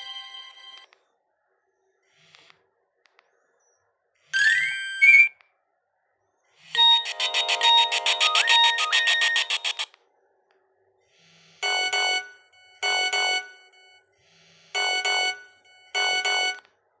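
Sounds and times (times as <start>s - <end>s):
chiming ringtone in pairs: 6.8s - 9.9s
fast beeping ringtone melody: 6.8s - 9.9s.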